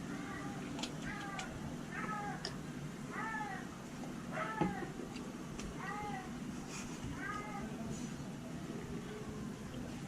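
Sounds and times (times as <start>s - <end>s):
low steady hum: 0.0s - 10.0s
cat meowing: 0.1s - 2.4s, 3.1s - 3.6s, 4.3s - 4.9s, 5.8s - 6.3s.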